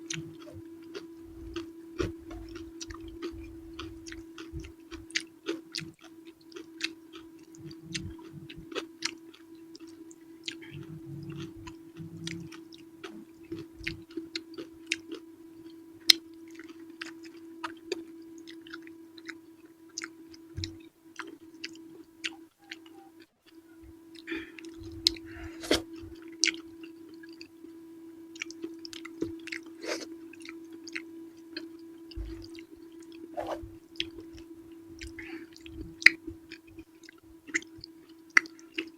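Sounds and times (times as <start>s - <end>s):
steady low hum: 0.0s - 38.9s
chewing and mouth sounds: 0.1s - 27.5s, 28.3s - 33.2s, 33.9s - 38.9s.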